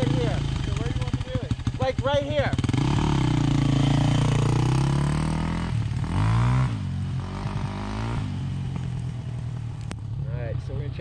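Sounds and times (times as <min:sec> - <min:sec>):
motorcycle engine revving past: 0:00.0 - 0:10.7.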